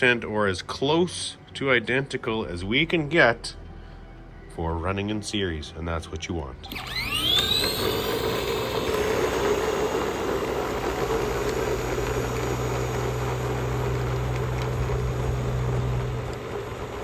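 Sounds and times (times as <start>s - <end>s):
motor humming: 6.6s - 17.0s.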